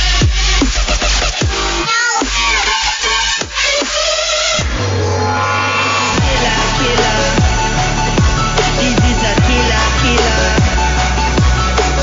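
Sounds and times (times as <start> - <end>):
deep bass note: 4.6 - 12.0
punchy kick drums: 6.2 - 12.0.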